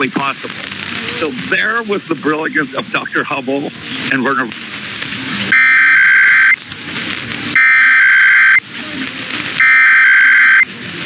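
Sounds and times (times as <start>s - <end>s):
warbling digital data tones: 5.4s - 6.6s, 7.5s - 8.6s, 9.6s - 10.7s.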